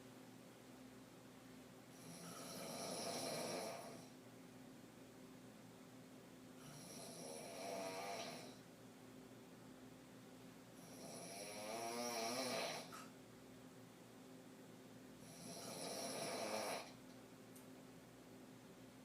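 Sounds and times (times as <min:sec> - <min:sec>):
woman snoring with rattle: 0:01.9 - 0:04.2, 0:06.6 - 0:08.6, 0:10.8 - 0:13.0, 0:15.2 - 0:17.0.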